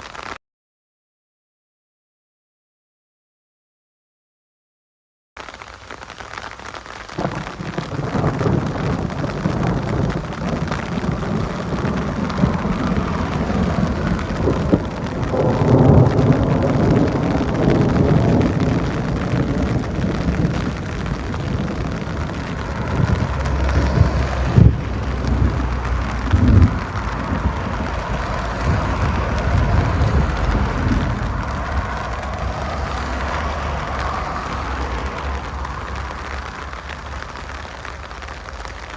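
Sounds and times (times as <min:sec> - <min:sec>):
steady rain: 0:00.0 - 0:00.4, 0:05.4 - 0:38.9
thunder rumbling: 0:06.8 - 0:38.9
sharp thunder claps: 0:07.0 - 0:38.9.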